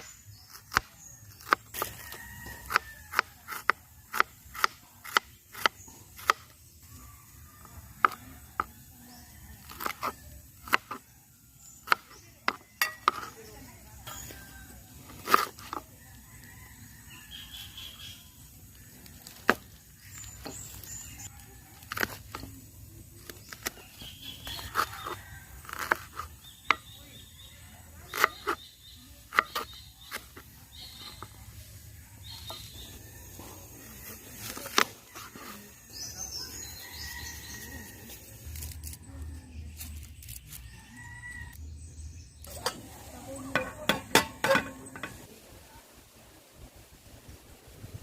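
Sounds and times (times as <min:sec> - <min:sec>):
birds chirping: 0:22.0 - 0:45.8.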